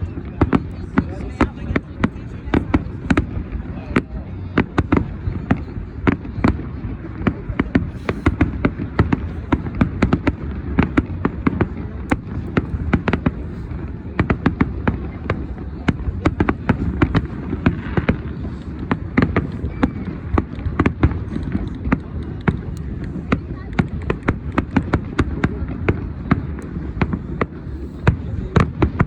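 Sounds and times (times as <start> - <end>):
continuous low rumble: 0.0 - 29.0
fireworks bangs and crackles: 0.0 - 29.0.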